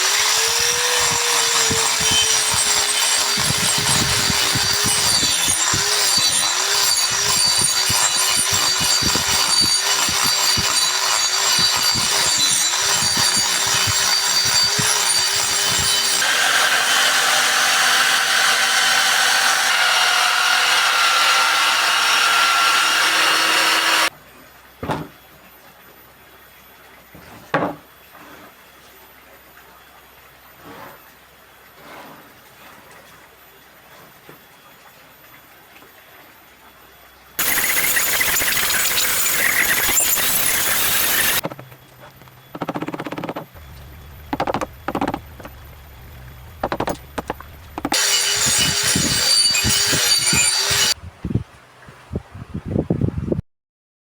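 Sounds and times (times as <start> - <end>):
grinding hiss: 0.0 - 24.1, 37.4 - 41.4, 43.6 - 51.0
power tool cutting wood: 0.0 - 24.1, 37.4 - 41.4, 42.7 - 51.0.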